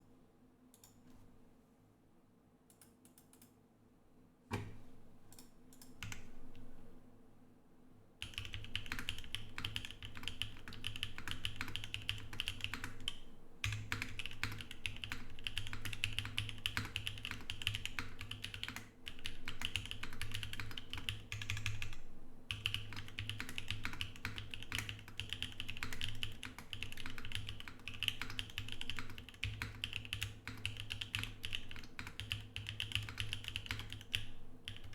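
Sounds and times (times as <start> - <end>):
mechanical keyboard typing: 8.2 - 34.9.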